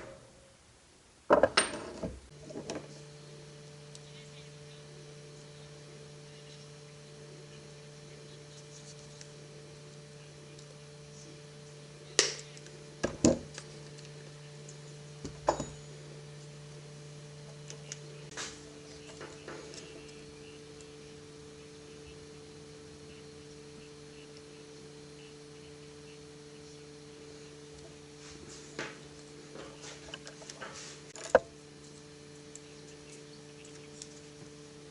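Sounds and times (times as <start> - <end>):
electrical hum: 0.0 - 34.9.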